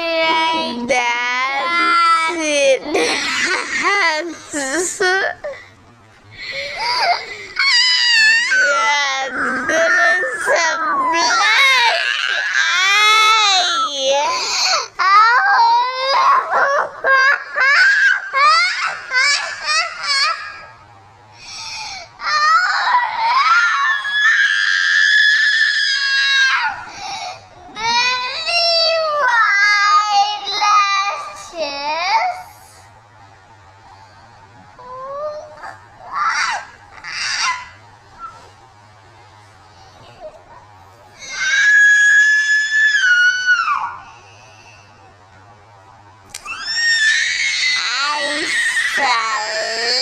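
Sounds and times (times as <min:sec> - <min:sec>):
young child screaming: 0:07.6 - 0:14.0, 0:22.2 - 0:26.8, 0:34.8 - 0:37.8, 0:41.2 - 0:44.1, 0:46.4 - 0:50.0.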